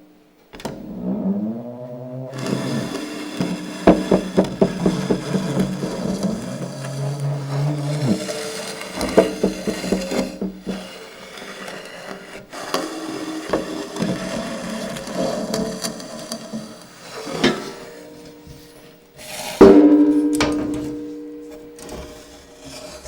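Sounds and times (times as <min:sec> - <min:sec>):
scraping and knocks on wood: 0:00.5 - 0:23.0
loud ringing strike: 0:19.6 - 0:22.1.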